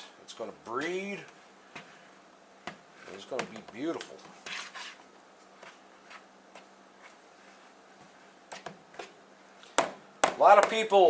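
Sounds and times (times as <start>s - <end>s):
soft scrape: 4.3s - 6.3s.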